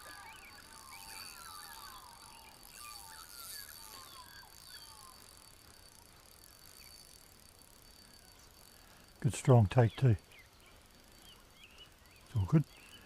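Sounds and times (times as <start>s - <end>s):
magpies carolling: 0.0s - 7.1s
steady high-pitched whine: 0.0s - 13.0s.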